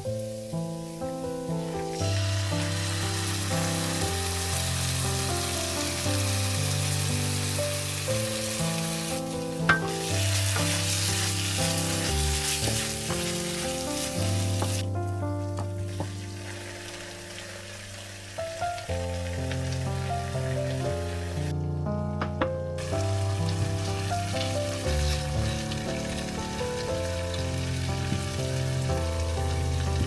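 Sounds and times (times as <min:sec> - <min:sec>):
food sizzling in a pan: 0:00.0 - 0:14.9, 0:15.5 - 0:21.5, 0:22.8 - 0:30.0
gentle background music: 0:00.0 - 0:30.0.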